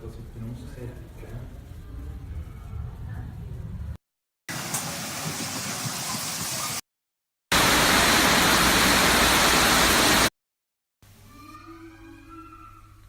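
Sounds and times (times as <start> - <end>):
waterfall rushing: 7.5 - 10.3.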